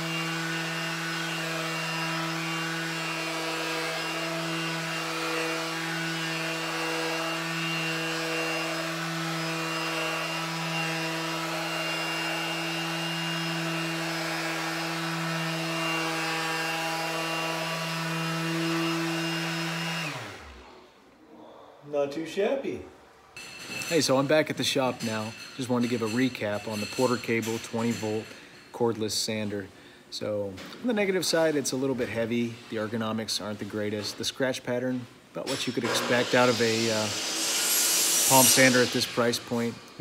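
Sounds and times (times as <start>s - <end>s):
orbital sander humming: 0.0s - 20.6s.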